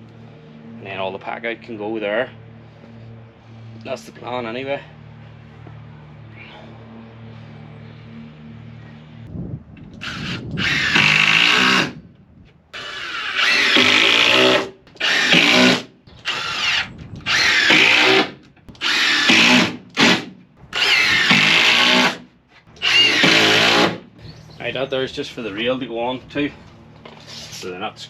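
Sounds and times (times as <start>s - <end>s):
power drill running: 10.0s - 12.0s, 12.8s - 22.2s, 22.8s - 24.0s.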